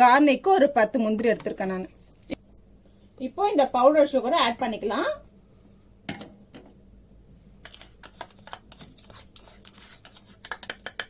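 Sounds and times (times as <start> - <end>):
spoon tapping against bowl: 10.4 - 11.0.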